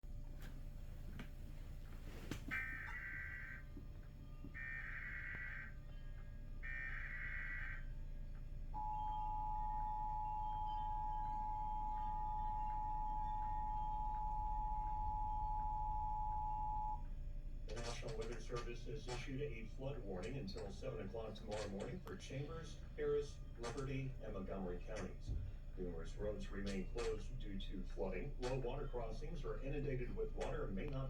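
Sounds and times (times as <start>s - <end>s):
two-tone attention signal: 8.8s - 17.0s.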